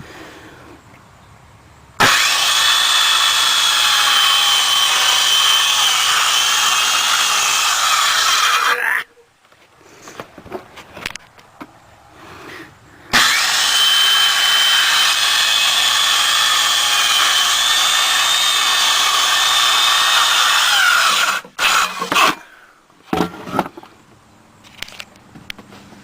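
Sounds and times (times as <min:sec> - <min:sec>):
power saw cutting wood: 0:02.0 - 0:09.0, 0:13.1 - 0:22.5.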